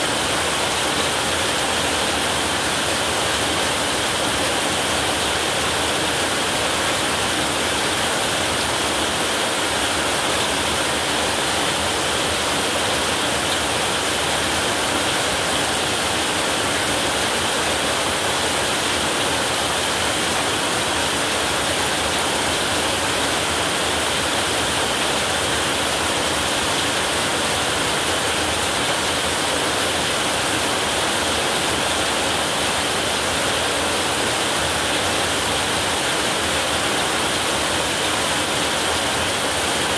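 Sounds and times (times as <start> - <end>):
heavy rain on a roof: 0.0 - 39.9.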